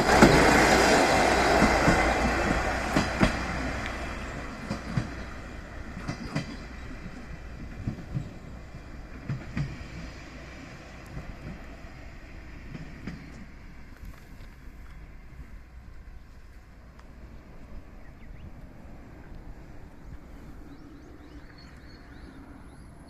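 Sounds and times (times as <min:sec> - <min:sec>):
wheels clicking over rail joints: 0:00.0 - 0:10.2
low rumble of railcar: 0:00.0 - 0:23.0.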